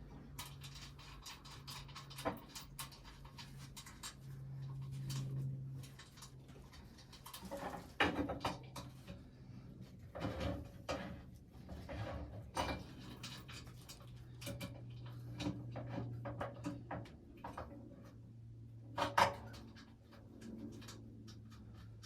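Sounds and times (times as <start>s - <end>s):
knocks and clatter of stove parts: 0.0s - 9.2s, 10.1s - 18.1s, 18.9s - 22.0s.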